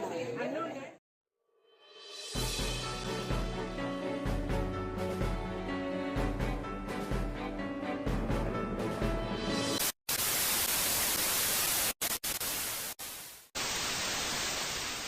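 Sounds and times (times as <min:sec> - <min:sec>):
background music: 0:01.8 - 0:09.8.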